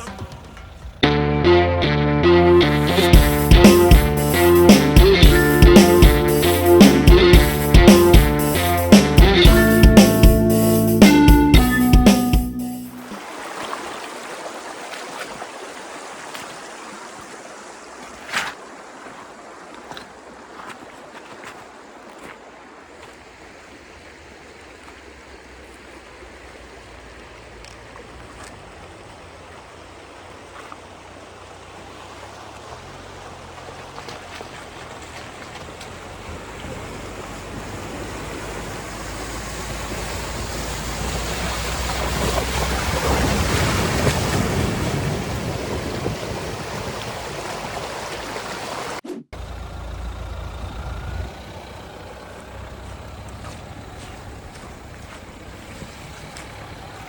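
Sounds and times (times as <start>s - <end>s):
tyres on rough track: 0.0s - 12.3s, 25.0s - 57.0s
low engine drone: 49.4s - 55.7s.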